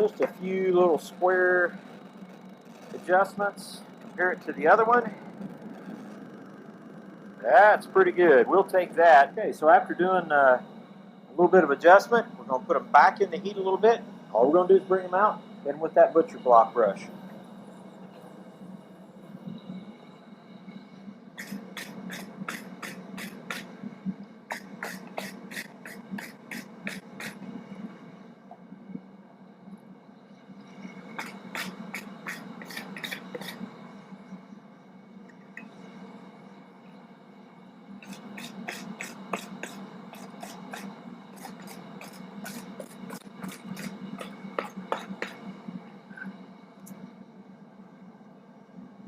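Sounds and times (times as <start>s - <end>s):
steady low hum: 0.0s - 49.0s
wire brush scrubbing steel: 24.5s - 27.4s, 31.2s - 33.6s, 38.0s - 45.4s.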